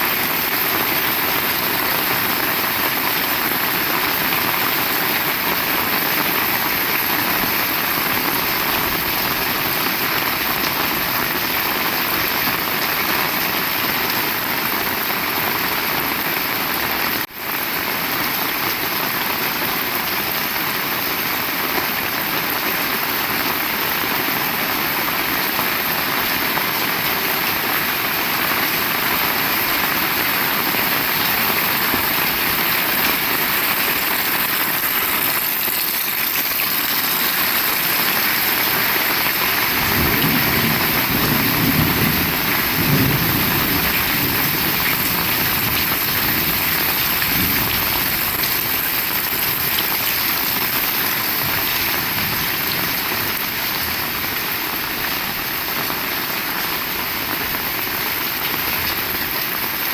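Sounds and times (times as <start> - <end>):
heavy rain: 0.0 - 59.9.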